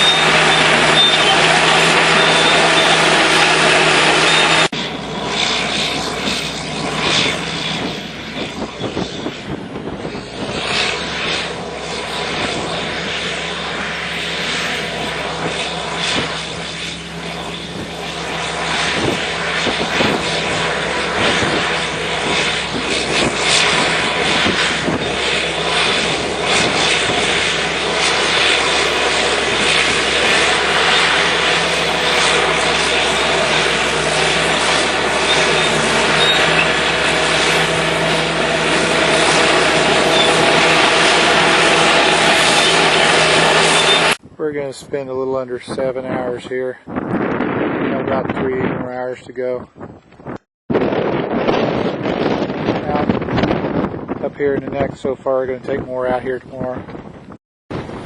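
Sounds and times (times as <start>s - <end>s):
bulldozer diesel engine running: 0.0s - 44.2s.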